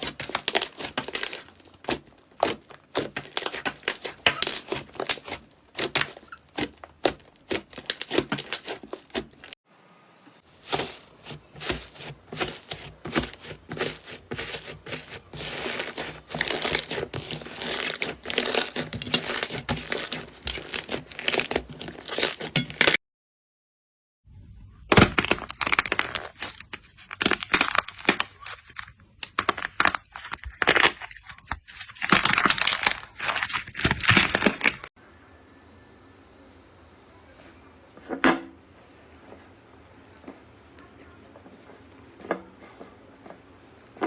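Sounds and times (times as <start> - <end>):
slime crackling and popping: 0.0 - 9.5, 10.6 - 22.9, 29.2 - 34.9.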